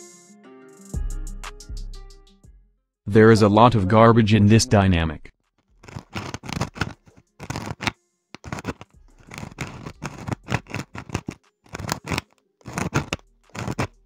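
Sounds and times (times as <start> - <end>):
scratching and scraping strokes: 5.8 - 14.0.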